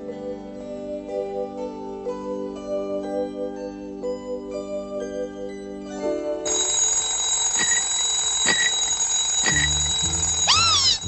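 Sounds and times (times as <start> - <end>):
alarm clock ringing: 5.4 - 11.0.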